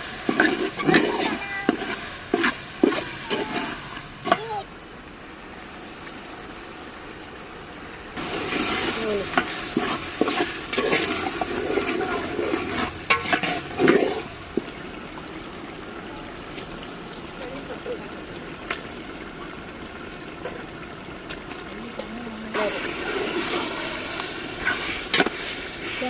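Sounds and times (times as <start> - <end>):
vegetables sizzling in oil: 0.0 - 26.0
spoon scraping metal pot: 0.3 - 4.4, 9.3 - 14.3.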